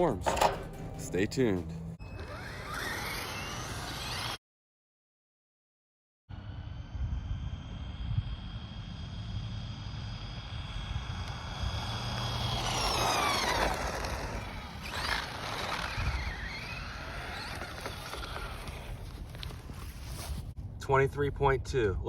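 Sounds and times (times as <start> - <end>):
rc truck electric motor whining: 2.0 - 4.4, 6.4 - 20.3
wind rumble on microphone: 6.4 - 22.0.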